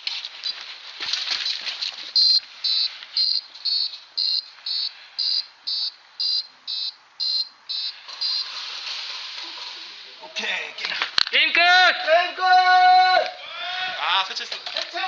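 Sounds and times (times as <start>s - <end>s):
high-pitched alarm beeping: 2.2s - 8.5s.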